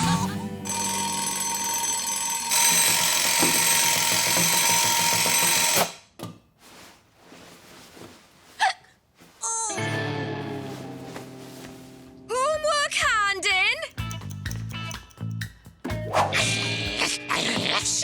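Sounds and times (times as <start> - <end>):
alarm clock bell ringing: 0.6 - 6.0.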